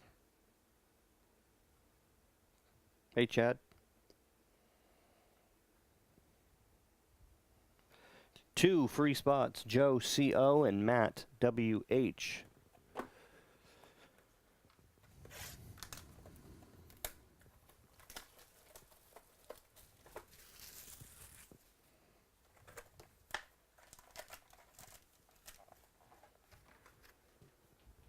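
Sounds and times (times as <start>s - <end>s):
packaging crinkling and tearing: 15.2s - 21.7s, 22.5s - 27.2s.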